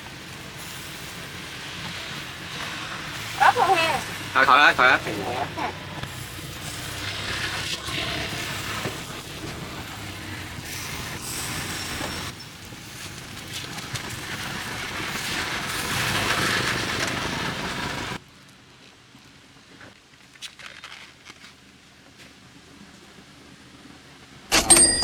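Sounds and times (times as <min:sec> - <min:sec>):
vehicles passing: 0:00.0 - 0:18.2.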